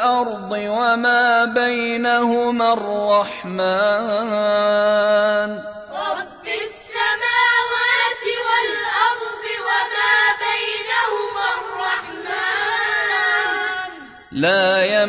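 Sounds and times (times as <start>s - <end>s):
boys chanting in unison: 5.0s - 15.0s.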